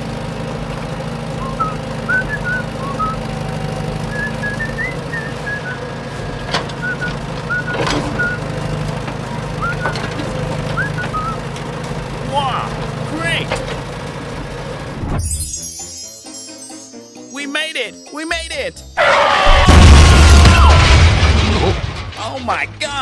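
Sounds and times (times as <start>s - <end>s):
vehicle engine running: 0.0s - 15.8s
high chirping whistles: 1.4s - 3.2s.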